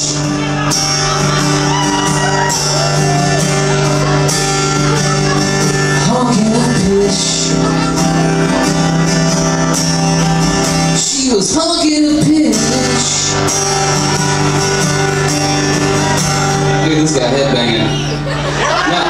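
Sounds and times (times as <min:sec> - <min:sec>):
sliding bending guitar notes: 0:00.0 - 0:18.6
sustained band chords: 0:12.0 - 0:19.0.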